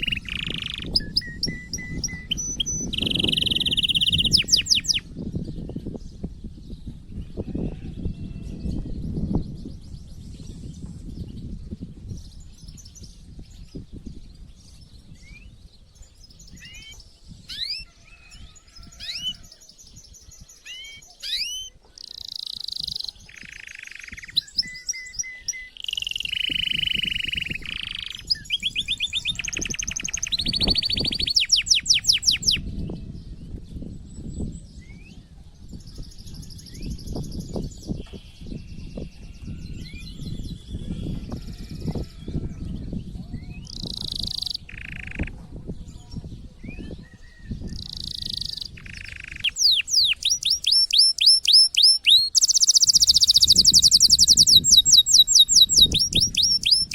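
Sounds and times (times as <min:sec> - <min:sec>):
canary singing: 0:00.0 - 0:05.0, 0:16.4 - 0:19.6, 0:20.4 - 0:32.6, 0:43.4 - 0:45.4, 0:47.8 - 0:56.9.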